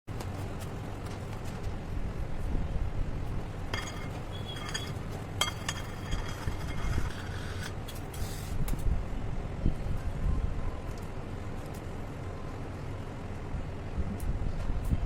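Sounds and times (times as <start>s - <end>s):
utensil clinking on dish: 3.8s - 7.2s.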